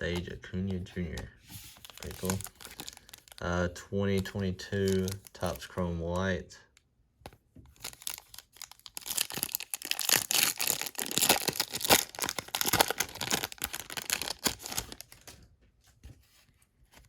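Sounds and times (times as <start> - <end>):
card pack wrapper crinkling: 1.0 - 3.4, 4.1 - 5.8, 7.7 - 15.4.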